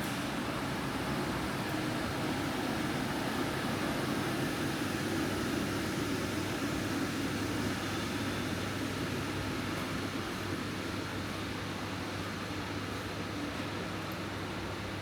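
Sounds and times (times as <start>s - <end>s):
air conditioning rushing noise: 0.0s - 15.0s.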